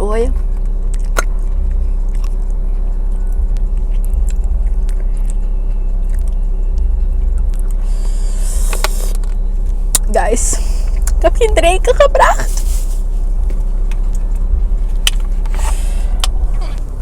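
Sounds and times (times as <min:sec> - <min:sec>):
steady low hum: 0:00.0 - 0:17.0
mouth clicks: 0:07.6 - 0:09.2.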